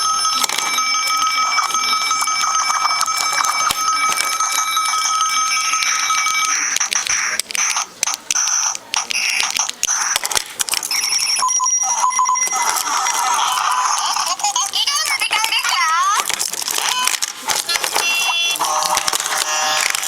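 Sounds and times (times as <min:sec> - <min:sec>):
bell-like ringing tone: 0:00.0 - 0:06.7.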